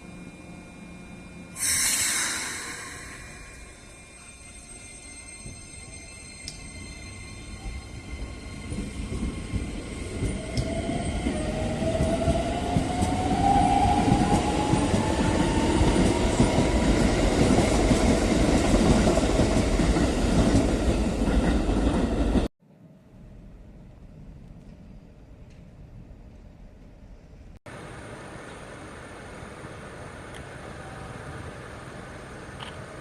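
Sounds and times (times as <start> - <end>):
rising whine: 1.6 - 4.9
train wheels rumbling on rails: 5.4 - 22.5.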